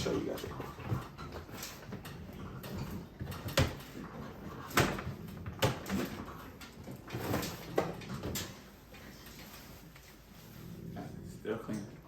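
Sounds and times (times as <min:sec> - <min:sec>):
sharp knocks and clacks of parts: 0:00.0 - 0:08.7.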